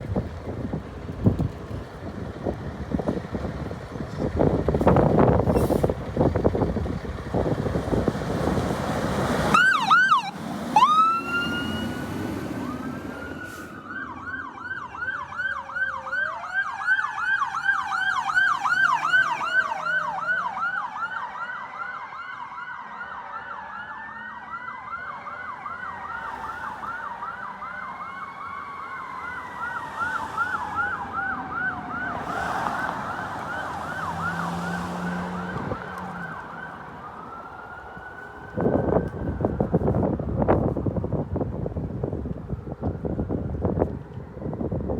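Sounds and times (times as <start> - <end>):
rushing vehicle noise: 0.0 - 44.9
mechanical siren rising and falling: 9.4 - 40.2
electronic yelp siren: 9.5 - 40.2.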